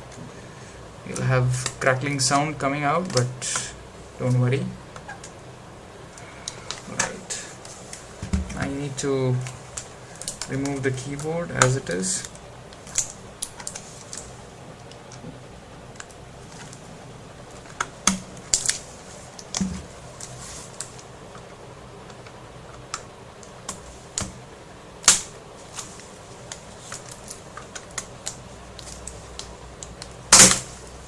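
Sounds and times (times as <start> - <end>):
plastic clicks and crackles: 9.4 - 16.8.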